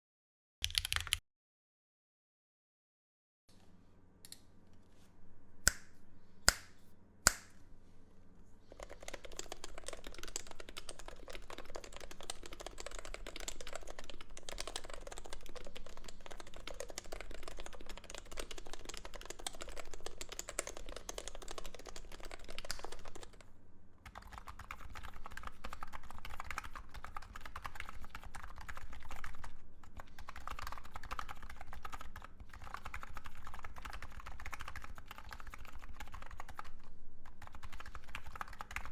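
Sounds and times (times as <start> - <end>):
fast keyboard typing: 0.6 - 1.2, 8.7 - 23.4, 24.1 - 38.9.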